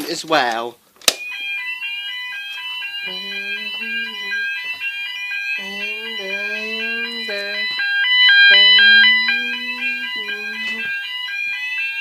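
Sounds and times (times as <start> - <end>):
alarm switch click: 1.1 - 1.5
two-tone alarm warble: 1.1 - 12.0
rising alarm sweep tone: 1.2 - 12.0.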